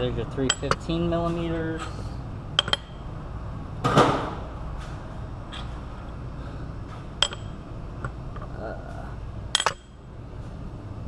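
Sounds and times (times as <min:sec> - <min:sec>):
steel bolts clattering: 0:00.4 - 0:01.0, 0:02.6 - 0:03.0, 0:07.2 - 0:08.2, 0:09.5 - 0:10.0
sharp metallic clinks: 0:07.2 - 0:08.2, 0:09.5 - 0:10.0.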